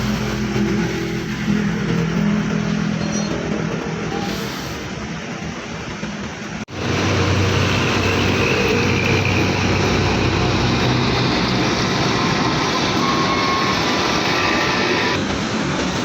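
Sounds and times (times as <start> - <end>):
loud mechanical roar: 6.7 - 15.2.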